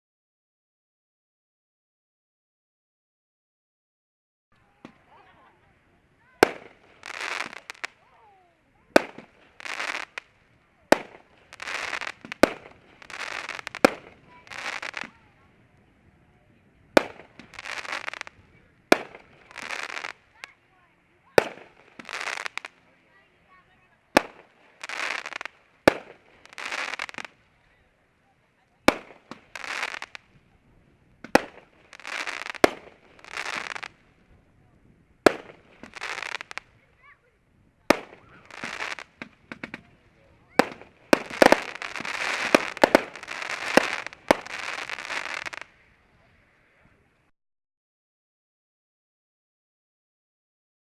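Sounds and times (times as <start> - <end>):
firework crackling and hissing: 4.6 - 47.2
firework bangs: 4.7 - 15.7, 16.8 - 20.6, 21.3 - 27.6, 28.7 - 37.0, 37.8 - 45.8.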